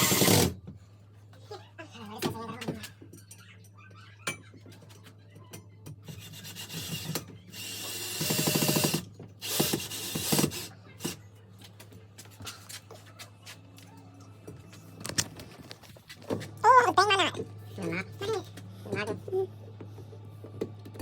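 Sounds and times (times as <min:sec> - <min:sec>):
power drill driving a screw: 0:00.0 - 0:00.6, 0:06.2 - 0:10.7.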